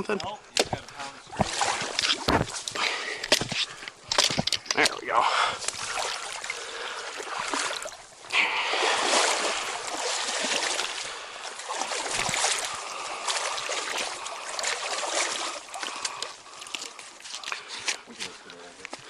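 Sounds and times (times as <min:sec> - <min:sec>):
stream water rushing: 0:01.3 - 0:03.5, 0:04.8 - 0:17.3.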